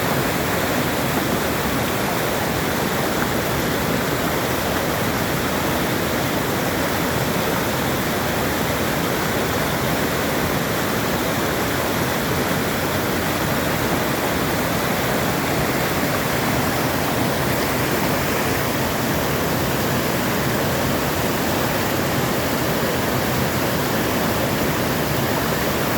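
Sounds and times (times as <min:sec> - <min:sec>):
mountain stream rushing: 0:00.0 - 0:25.9.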